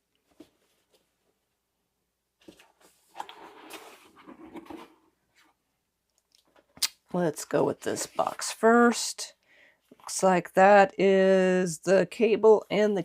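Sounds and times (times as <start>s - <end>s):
cardboard rustling and scraping: 2.4s - 5.6s.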